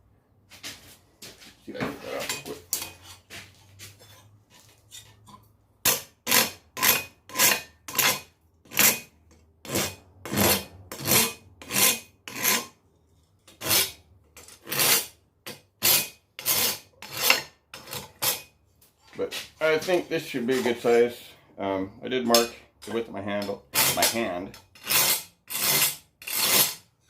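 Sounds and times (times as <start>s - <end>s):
hand file rasping on steel: 5.9s - 12.8s, 13.5s - 18.5s, 23.5s - 26.9s.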